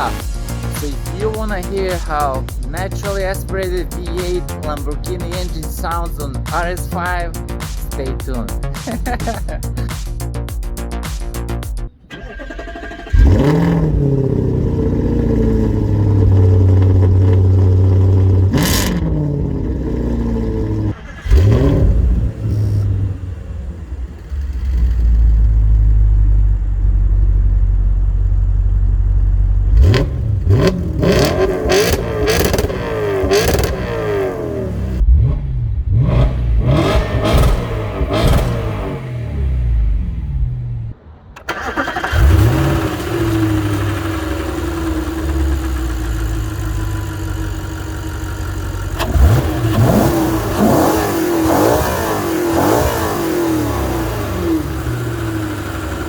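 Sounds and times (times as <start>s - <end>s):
exhaust pops and crackles: 0.0s - 11.9s, 13.0s - 22.9s, 29.4s - 34.0s, 36.8s - 38.9s, 41.4s - 56.0s
car engine revving: 0.0s - 56.0s.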